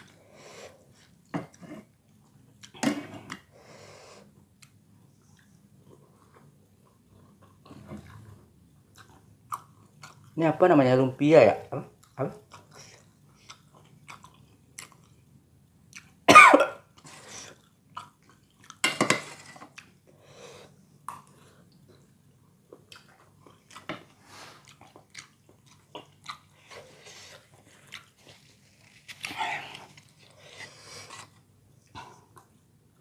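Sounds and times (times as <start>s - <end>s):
chewing and mouth sounds: 4.6s - 10.4s, 11.9s - 15.2s, 15.9s - 16.2s, 17.5s - 18.8s, 22.7s - 32.6s.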